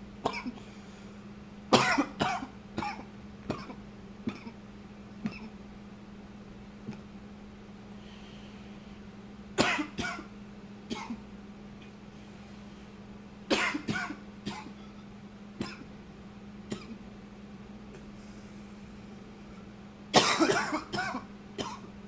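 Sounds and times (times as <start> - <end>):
man coughing: 0.2 - 0.6, 1.7 - 4.6, 9.6 - 10.3, 10.9 - 11.2, 13.5 - 14.9, 15.6 - 15.9, 20.2 - 21.9.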